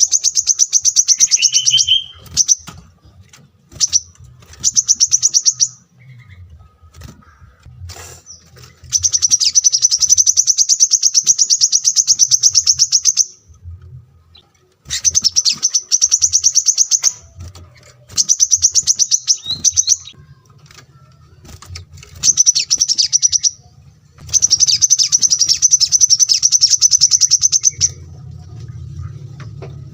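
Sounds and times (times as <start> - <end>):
songbird high-pitched trill: 0.0 - 2.7, 14.9 - 17.2, 17.8 - 20.2, 22.2 - 23.6, 24.3 - 28.0.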